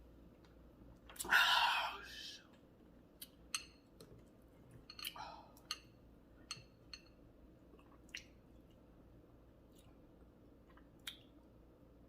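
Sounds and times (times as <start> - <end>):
wet mouth eating sounds: 7.7 - 8.4, 10.6 - 11.4.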